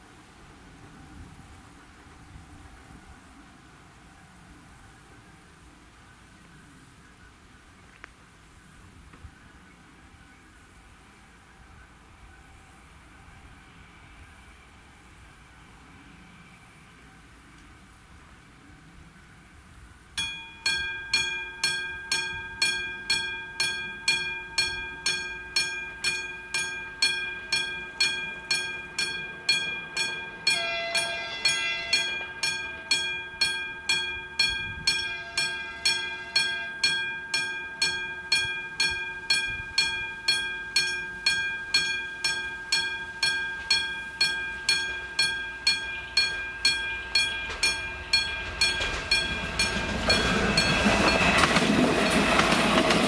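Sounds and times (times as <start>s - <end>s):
level crossing warning bell: 20.2s - 53.0s
horn-like tone: 29.4s - 38.4s.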